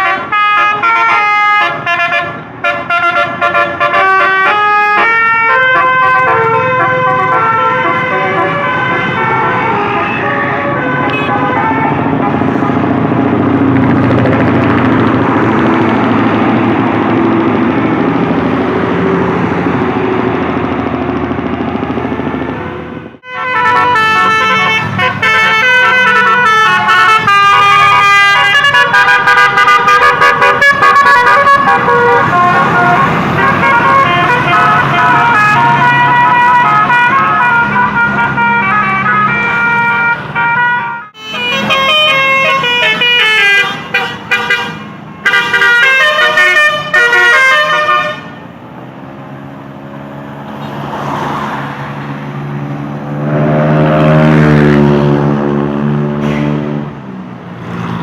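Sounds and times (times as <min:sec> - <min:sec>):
musical air horn melody: 0:00.0 - 0:12.8, 0:23.2 - 0:48.5
bus engine: 0:00.0 - 0:58.0.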